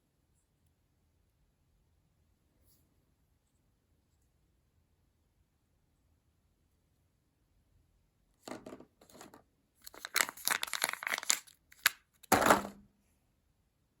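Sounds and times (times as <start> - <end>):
wrapper tearing and crinkling: 9.8 - 12.0
loud wrapper crunch: 9.8 - 12.3.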